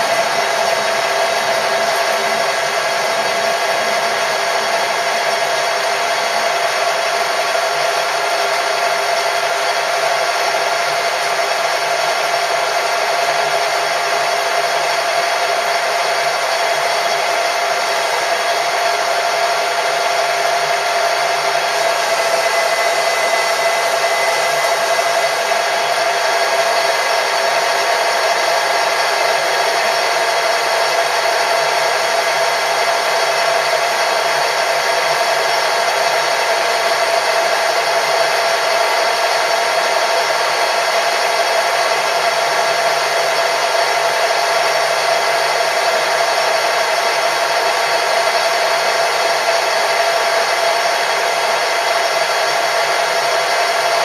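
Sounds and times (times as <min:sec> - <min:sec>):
electric motor whining: 0:14.8 - 0:30.3.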